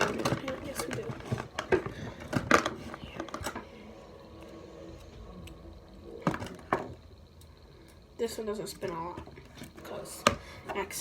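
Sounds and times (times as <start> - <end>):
plastic toys clacking and rattling: 0.0 - 3.7.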